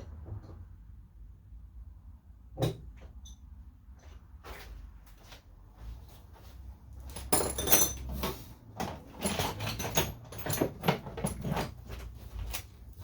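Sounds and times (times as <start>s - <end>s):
metal tools clinking and clattering: 7.0s - 12.7s.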